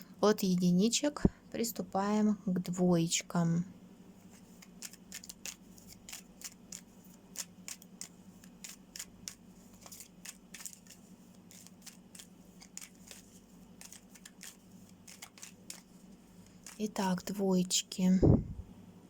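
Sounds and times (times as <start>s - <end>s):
faint steady hum: 0.0s - 19.0s
cards shuffled by hand: 4.2s - 17.3s.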